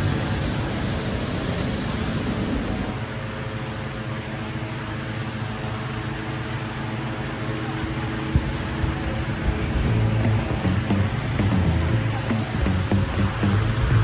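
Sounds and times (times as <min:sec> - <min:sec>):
high hiss: 0:00.0 - 0:03.1
machine running: 0:00.0 - 0:03.1, 0:08.3 - 0:14.0
low hum: 0:08.4 - 0:14.0.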